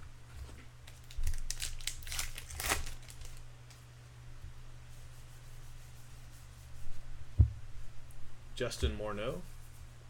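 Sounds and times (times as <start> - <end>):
wrapper crinkling: 0.9 - 3.4
steady low hum: 3.0 - 10.0.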